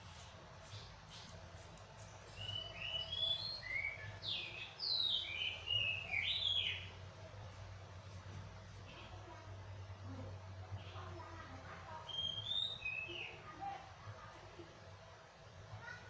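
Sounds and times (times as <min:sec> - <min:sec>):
faint low hum: 0:00.0 - 0:12.7
bird chirping song: 0:02.0 - 0:07.0, 0:12.0 - 0:13.5.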